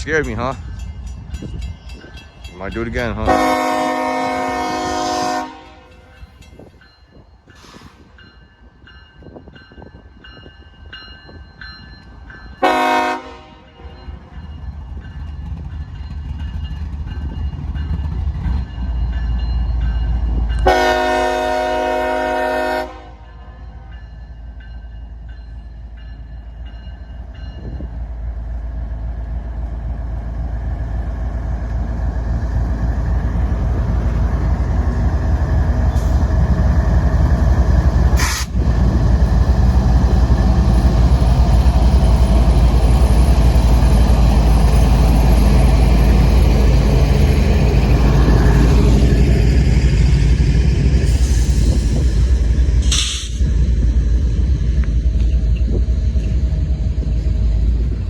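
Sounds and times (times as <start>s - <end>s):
locomotive engine rumble: 0.0s - 58.0s
locomotive air horn blasts: 3.2s - 6.0s, 12.6s - 13.9s, 20.6s - 23.3s.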